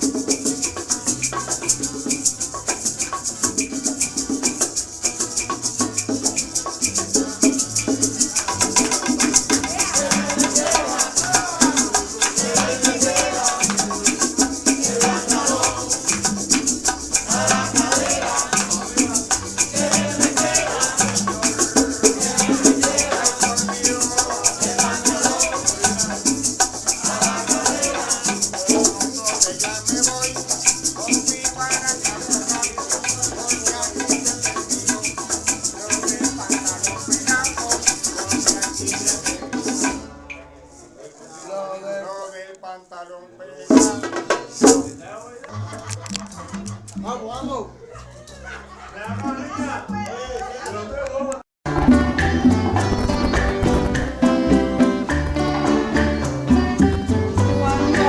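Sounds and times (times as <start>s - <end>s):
rhythmic bass pulse: 0.0s - 40.1s, 45.5s - 47.2s, 51.7s - 58.0s
maracas shaking: 0.0s - 41.5s, 43.7s - 58.0s.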